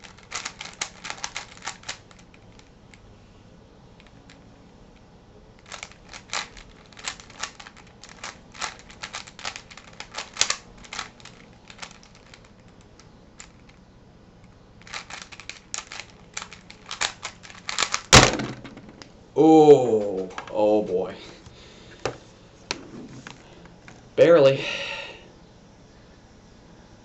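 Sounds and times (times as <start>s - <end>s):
puzzle cube plastic clicks: 0.0s - 3.0s, 5.6s - 13.8s, 14.4s - 19.1s.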